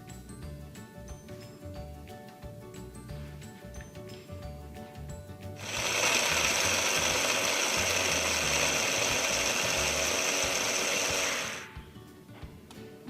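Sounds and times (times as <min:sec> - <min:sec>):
background music: 0:00.0 - 0:13.0
blender running: 0:05.6 - 0:11.8.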